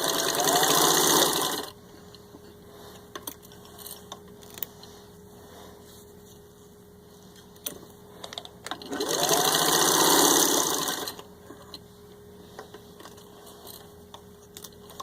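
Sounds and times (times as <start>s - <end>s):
sewing machine stitching: 0.0s - 1.7s, 8.8s - 11.2s.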